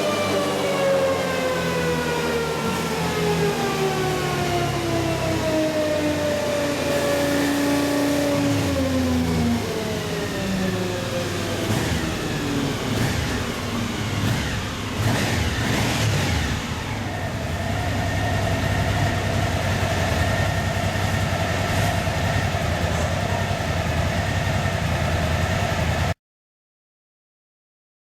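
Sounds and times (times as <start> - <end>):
motorcycle engine running: 2.6 - 26.2
steady whine: 4.8 - 26.2.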